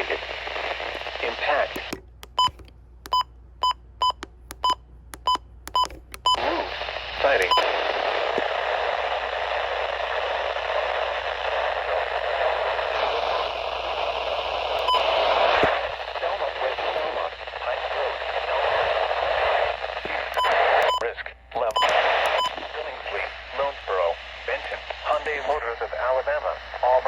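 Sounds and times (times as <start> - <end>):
radio static hiss: 0.0 - 2.6, 5.8 - 27.0
short electronic beeps: 2.4 - 6.4.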